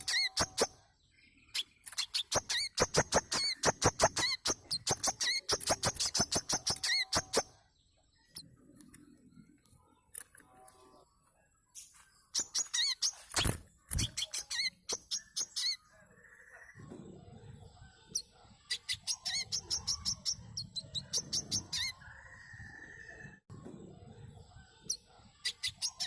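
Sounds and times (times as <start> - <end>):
sunbird chirping and twittering: 0.0 - 26.0.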